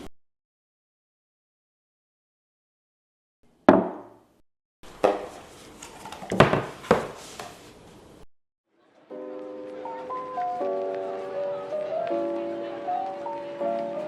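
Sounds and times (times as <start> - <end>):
knocks on hard surface: 3.7 - 4.1.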